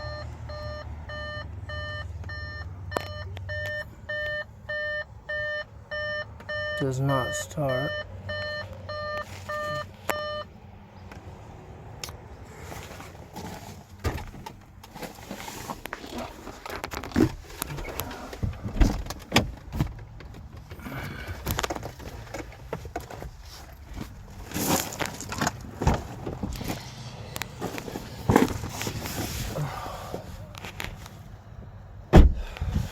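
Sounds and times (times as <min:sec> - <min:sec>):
dashboard warning chime beeping: 0:00.0 - 0:10.6
clicks and rattles in car cabin: 0:12.9 - 0:31.2, 0:32.0 - 0:32.9.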